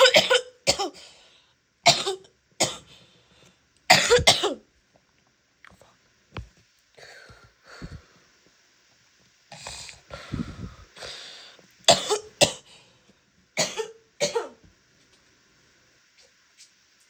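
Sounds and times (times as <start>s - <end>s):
woman coughing: 0.0s - 1.0s, 1.9s - 2.9s, 3.9s - 4.6s, 11.9s - 12.7s, 13.6s - 14.6s
woman clearing throat: 3.9s - 4.6s.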